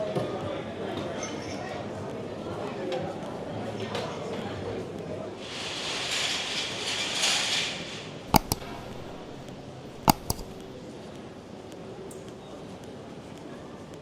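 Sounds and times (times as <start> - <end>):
sharp double clicks: 8.3 - 10.8.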